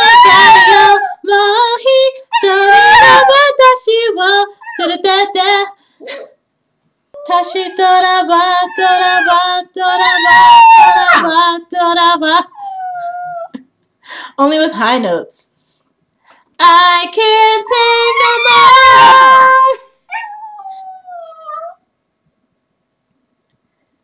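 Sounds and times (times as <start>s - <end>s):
puppy howling: 0.0s - 1.3s, 2.3s - 3.6s, 7.2s - 11.3s, 17.8s - 21.8s.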